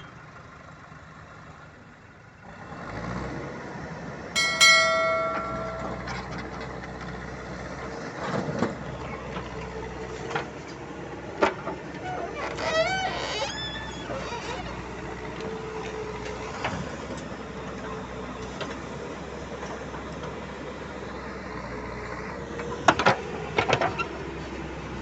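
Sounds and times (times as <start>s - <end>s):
loud metallic clang: 4.4s - 6.3s.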